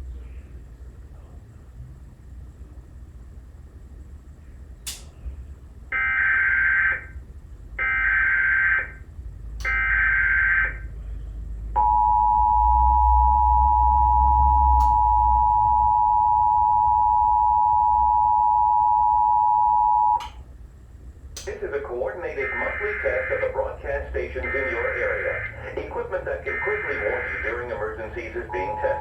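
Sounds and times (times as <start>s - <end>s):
two-tone attention signal: 11.8s - 20.3s.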